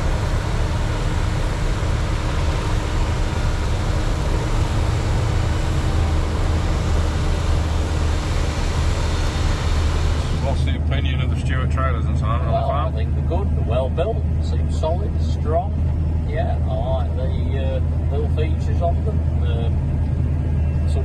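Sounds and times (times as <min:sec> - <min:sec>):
broad rushing noise: 0:00.0 - 0:10.8
farm machinery engine hum: 0:00.0 - 0:21.0.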